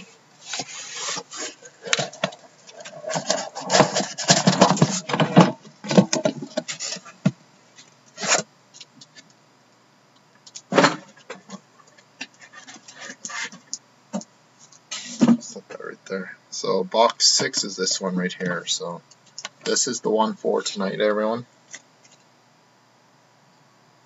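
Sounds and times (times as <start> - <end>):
cardboard boxes rustling and scraping: 0.0 - 7.4, 8.1 - 8.5, 12.3 - 13.7.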